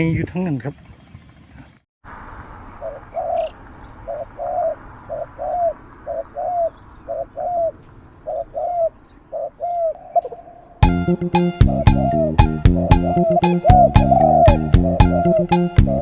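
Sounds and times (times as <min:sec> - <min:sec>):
dove cooing: 0:02.8 - 0:10.8, 0:11.6 - 0:16.0.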